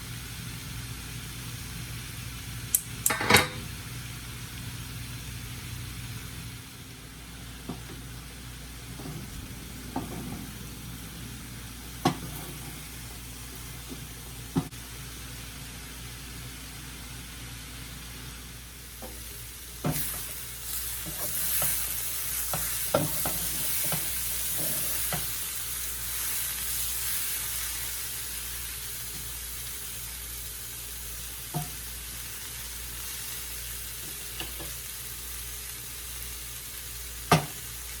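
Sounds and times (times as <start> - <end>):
food sizzling in hot oil: 0.0 - 38.0
utensil knocking against pan: 37.3 - 37.6.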